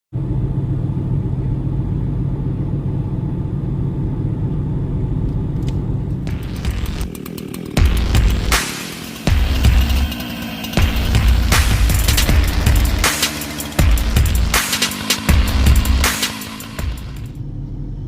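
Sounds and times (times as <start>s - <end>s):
engine droning: 0.1s - 18.0s
loud low thumps: 6.3s - 7.1s, 7.8s - 10.2s, 10.8s - 17.4s.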